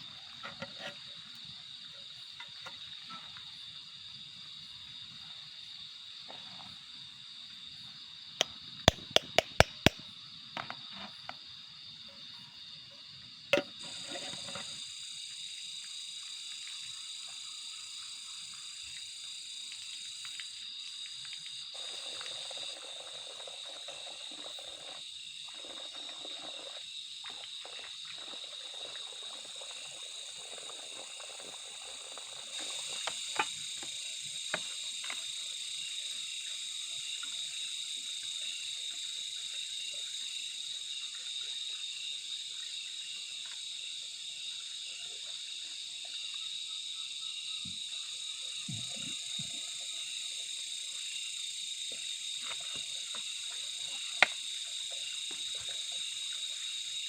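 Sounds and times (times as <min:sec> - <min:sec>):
night insects chirring: 0:00.0 - 0:57.0
sharp clicks: 0:08.9 - 0:10.0.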